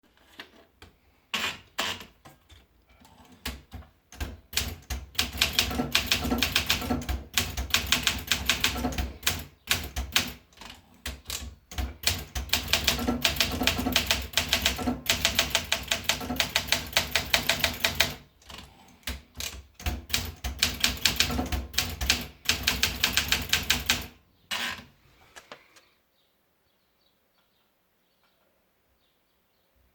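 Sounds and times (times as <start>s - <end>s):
typewriter typing: 3.3s - 24.9s.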